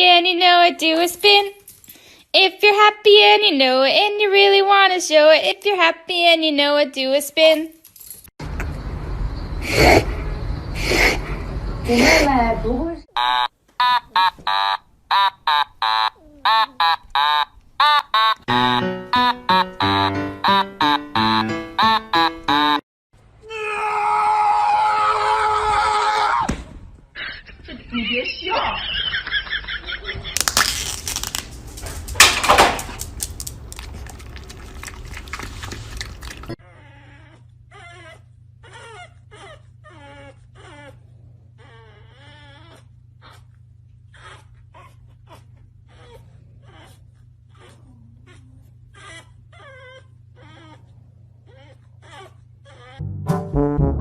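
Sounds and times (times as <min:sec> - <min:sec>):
dog whining and yowling: 0:36.5 - 0:43.5, 0:44.1 - 0:53.0
background music with bass: 0:53.0 - 0:54.0.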